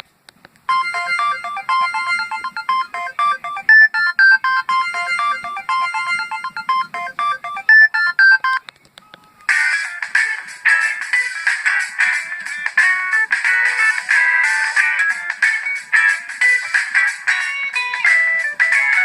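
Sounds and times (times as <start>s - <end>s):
buzzing ringtone: 0.7s - 8.6s
phone ringtone melody: 0.7s - 8.6s.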